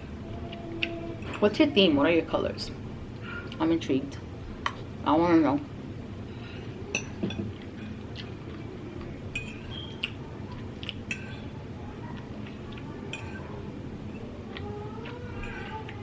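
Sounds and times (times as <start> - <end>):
low background hum: 0.0 - 16.0
cutlery clinking against a plate: 9.3 - 10.2, 10.8 - 11.5, 13.1 - 13.5.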